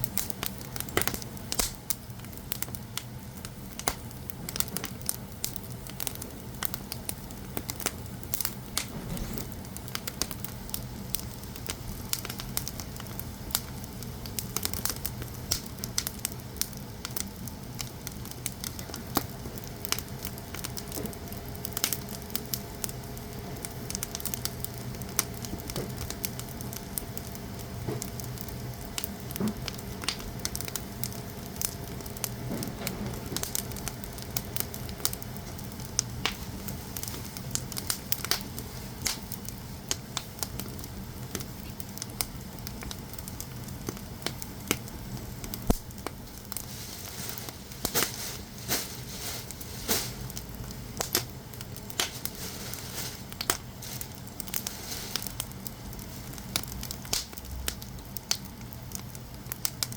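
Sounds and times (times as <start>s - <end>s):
fire hissing: 0.0s - 59.9s
firewood crackling and popping: 0.0s - 59.9s.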